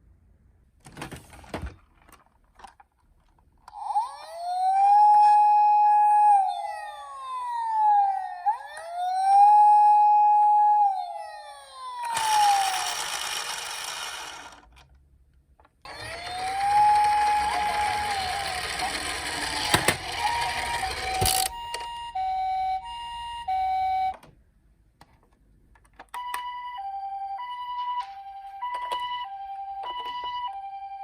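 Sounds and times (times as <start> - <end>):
toy electronic siren wailing: 3.7 - 14.6, 15.9 - 24.2, 26.2 - 31.0.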